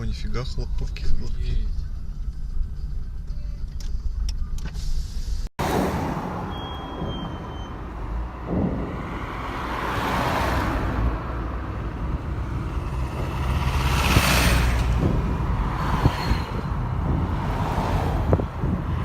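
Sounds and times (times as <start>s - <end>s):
low traffic rumble: 0.0s - 19.0s
vehicles passing: 5.6s - 19.0s.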